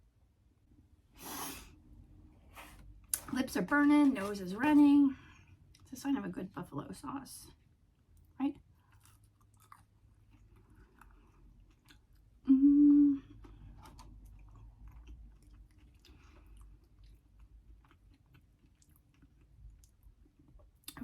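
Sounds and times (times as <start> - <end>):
close chewing: 8.1 - 12.4, 13.3 - 21.0
closed-mouth hum: 12.4 - 14.0.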